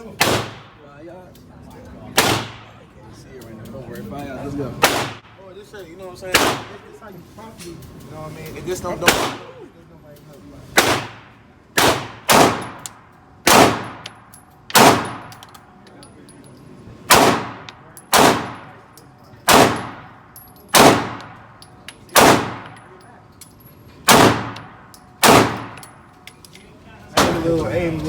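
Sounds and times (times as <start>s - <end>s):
pistol shots: 0.2s - 0.8s, 2.1s - 2.8s, 4.8s - 5.3s, 6.3s - 6.8s, 9.0s - 9.6s, 10.8s - 14.1s, 14.7s - 15.4s, 17.1s - 18.8s, 19.4s - 21.4s, 22.1s - 22.9s, 24.0s - 25.9s
faint metallic clinks: 14.0s - 16.9s, 20.2s - 24.0s, 24.8s - 26.9s.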